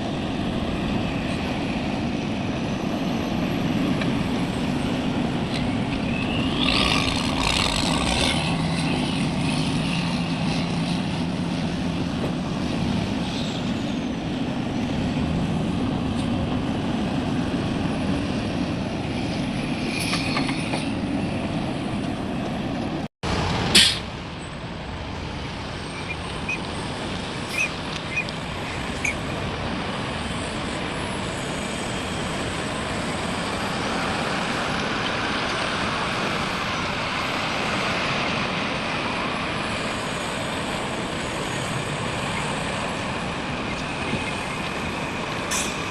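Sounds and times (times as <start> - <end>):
heavy diesel machinery running: 0.0 - 45.9
air-brake hiss: 23.7 - 24.1, 45.4 - 45.9.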